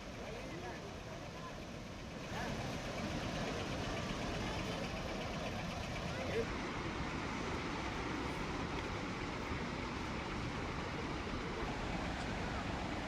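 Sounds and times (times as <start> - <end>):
water roaring through dam gates: 0.0 - 13.0.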